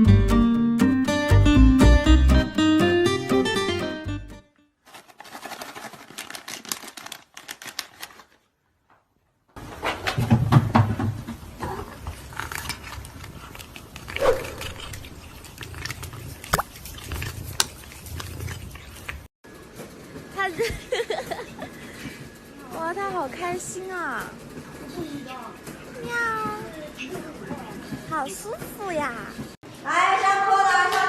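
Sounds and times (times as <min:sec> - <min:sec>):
rustling and handling noise: 0:04.8 - 0:10.4.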